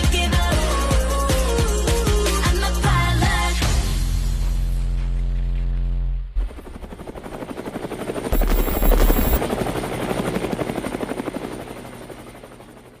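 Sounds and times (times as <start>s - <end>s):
helicopter rotor chopping: 6.4s - 13.0s.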